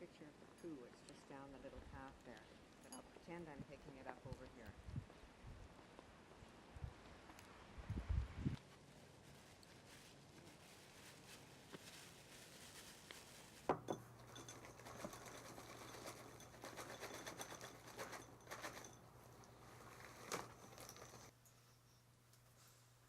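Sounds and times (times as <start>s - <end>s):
light rustling: 8.6s - 21.4s.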